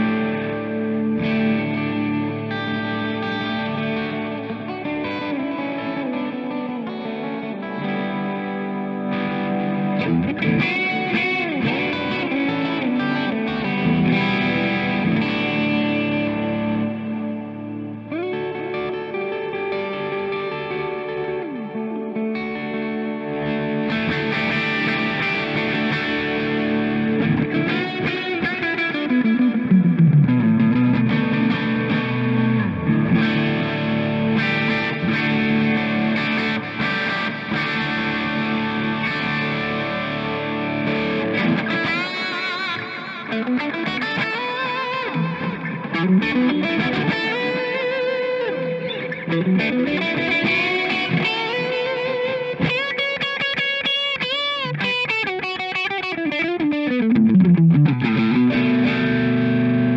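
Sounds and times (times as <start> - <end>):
bass guitar: 0.0 - 5.2, 8.8 - 19.3, 20.0 - 44.3, 56.0 - 59.9
overdriven electric guitar: 0.0 - 59.9.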